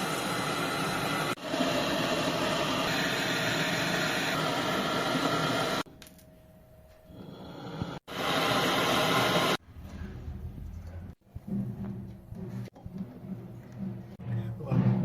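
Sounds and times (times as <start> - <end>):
machine hiss and hum: 0.0 - 5.9, 7.2 - 9.6.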